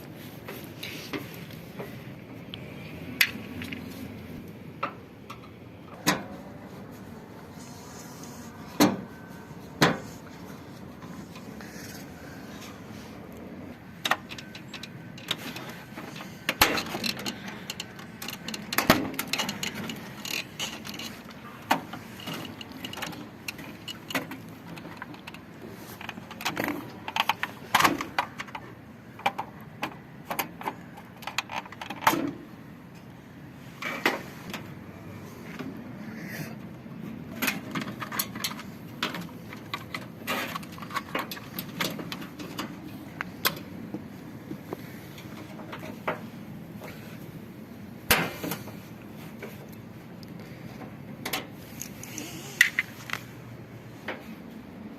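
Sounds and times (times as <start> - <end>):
tools and metal parts clinking: 14.0 - 29.5, 37.3 - 43.6.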